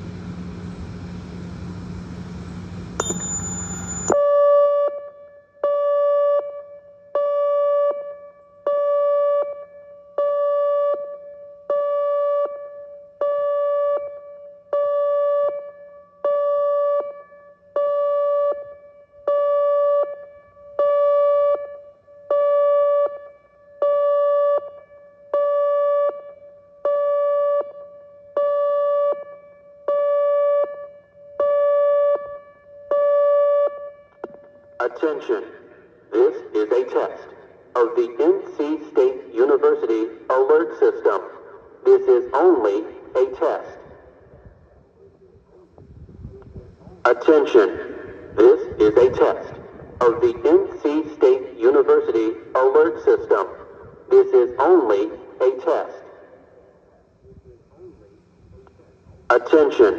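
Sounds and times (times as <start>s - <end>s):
pulsing warning siren: 0.0s - 59.9s
thin high tone: 3.0s - 4.2s.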